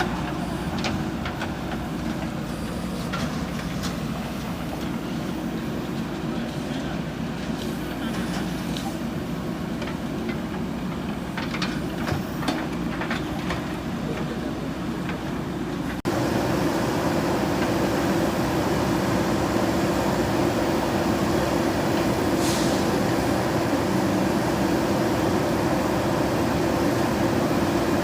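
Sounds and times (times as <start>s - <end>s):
diesel engine running: 0.0s - 28.0s
short hiss: 22.4s - 22.9s.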